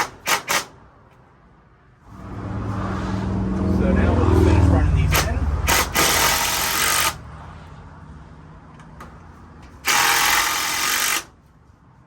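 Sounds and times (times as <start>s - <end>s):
power drill driving screws into wood: 0.0s - 0.8s, 5.1s - 7.2s, 9.8s - 11.3s.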